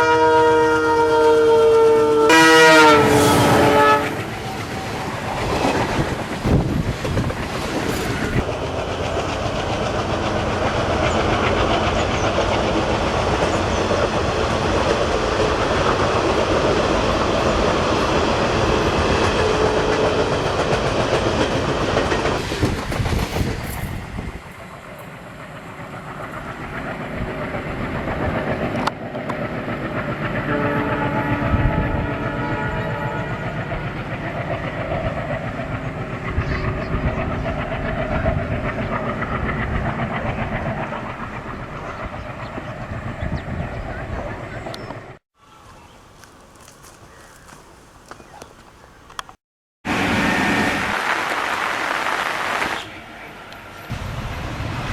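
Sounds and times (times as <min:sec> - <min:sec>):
two-note locomotive horn: 0:00.0 - 0:04.9, 0:30.4 - 0:33.6
diesel locomotive approaching: 0:00.0 - 0:54.9
train wheels clattering on rails: 0:04.1 - 0:32.2.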